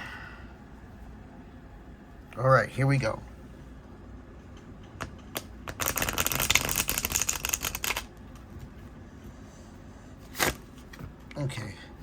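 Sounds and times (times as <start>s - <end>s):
cards being riffle-shuffled: 5.0s - 8.7s, 10.2s - 11.1s
cards rustling: 5.4s - 8.1s.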